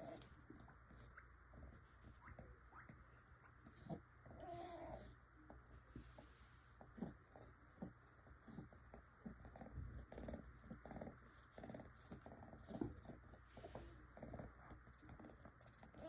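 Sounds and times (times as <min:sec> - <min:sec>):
kitten's crackling breaths: 0:03.5 - 0:16.0.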